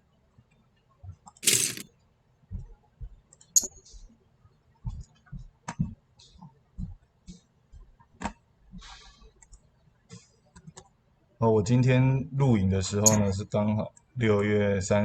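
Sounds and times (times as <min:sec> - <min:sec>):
plastic bricks clicking: 0:01.4 - 0:01.8
plastic parts knocking on table: 0:01.4 - 0:01.8
plastic pieces rattling: 0:01.4 - 0:01.8.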